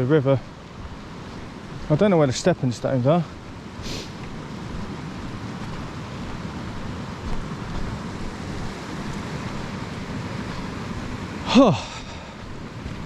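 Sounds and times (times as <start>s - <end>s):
river flowing over rocks: 5.1s - 13.0s
short vocal sound: 11.4s - 12.4s.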